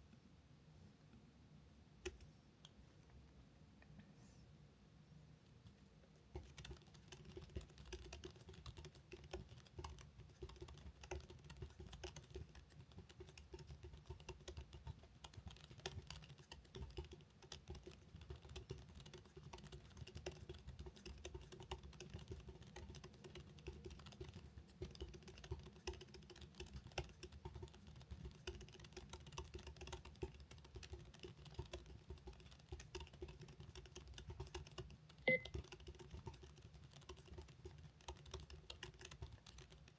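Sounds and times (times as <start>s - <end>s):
fast typing on keyboard: 6.3s - 39.9s
short high beep: 35.3s - 35.5s.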